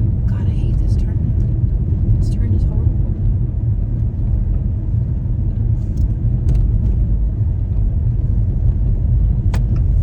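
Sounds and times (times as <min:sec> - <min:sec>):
car driving on snowy road: 0:00.0 - 0:10.0.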